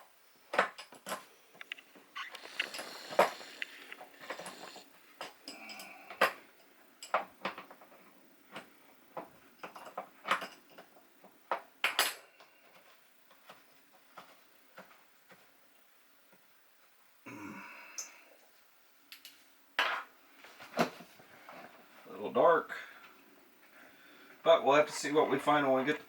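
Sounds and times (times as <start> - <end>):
brief scrape or creak: 2.2 - 4.8
tools clicking and knocking on fittings: 2.4 - 12.9.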